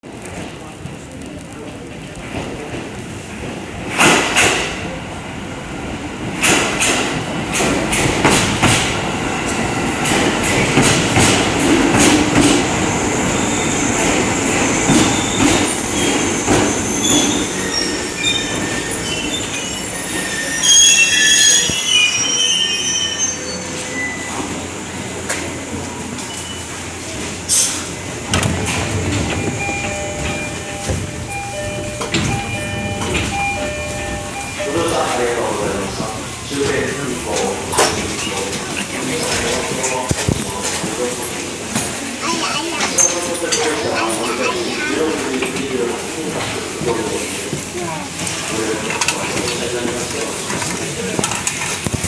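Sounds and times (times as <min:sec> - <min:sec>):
train rumble: 0:00.0 - 0:52.0
train wheels clicking over joints: 0:00.3 - 0:52.0
wheel squeals: 0:12.3 - 0:24.7.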